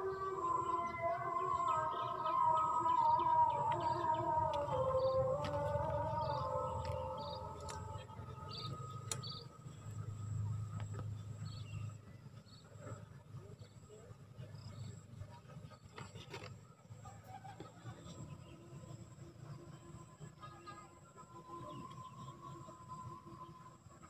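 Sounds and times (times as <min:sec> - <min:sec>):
low steady rumble: 0:00.0 - 0:17.1.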